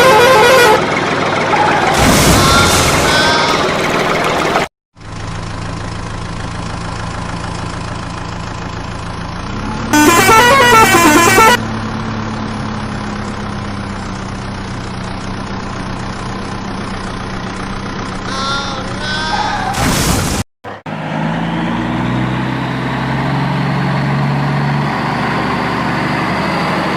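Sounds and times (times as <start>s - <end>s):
warbling horn: 0.0s - 1.0s, 9.9s - 11.6s
vehicle engine hum: 0.0s - 19.8s, 20.7s - 26.9s.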